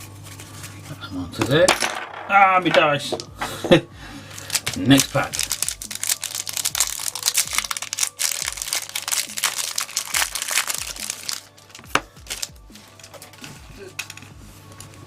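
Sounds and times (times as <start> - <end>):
background music with steady beat: 0.0 - 15.0
foil wrapper crinkling: 4.2 - 15.0.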